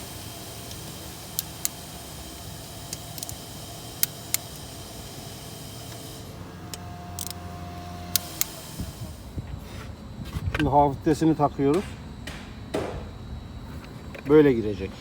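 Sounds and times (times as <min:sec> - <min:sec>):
hand tools clicking on bolts: 0:00.0 - 0:08.6
steady low hum: 0:00.0 - 0:15.0.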